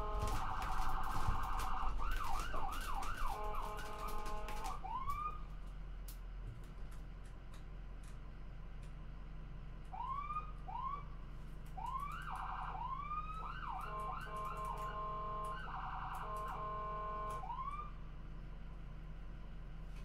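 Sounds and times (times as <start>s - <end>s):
electronic siren cycling: 0.0s - 5.5s, 9.9s - 11.0s, 11.8s - 18.0s.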